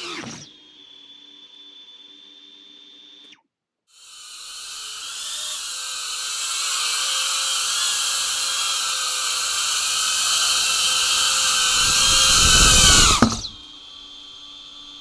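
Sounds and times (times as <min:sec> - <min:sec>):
drone motors whining: 0:07.3 - 0:14.9
propeller rushing whir: 0:11.5 - 0:13.6.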